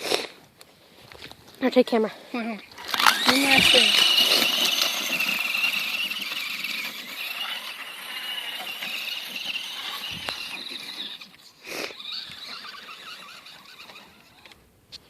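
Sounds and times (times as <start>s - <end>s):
electric motor and gears whining: 2.7s - 14.6s.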